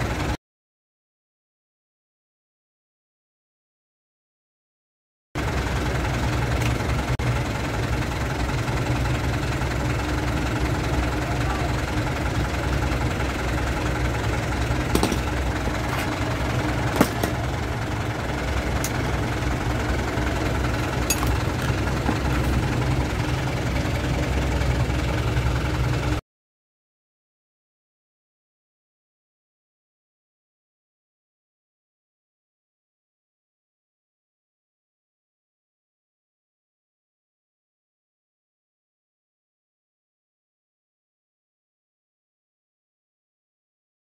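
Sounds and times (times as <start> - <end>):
diesel engine idling: 0.0 - 0.4, 5.4 - 26.2.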